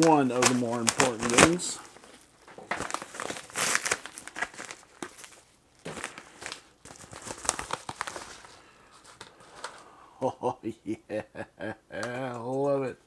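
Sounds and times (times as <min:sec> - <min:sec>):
packing material crinkling: 0:00.0 - 0:09.9.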